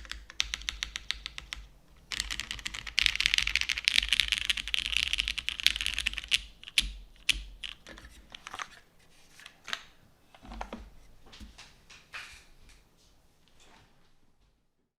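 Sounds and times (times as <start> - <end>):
typing on mechanical keyboard: 0.0 - 8.6.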